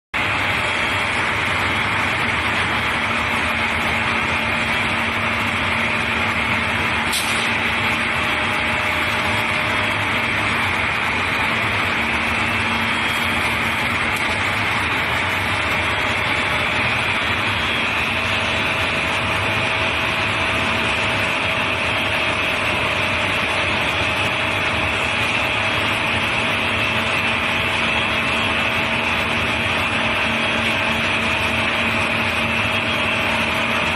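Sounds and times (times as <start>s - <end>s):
low motor hum: 0.2s - 33.9s
machine whirring hiss: 7.0s - 7.8s.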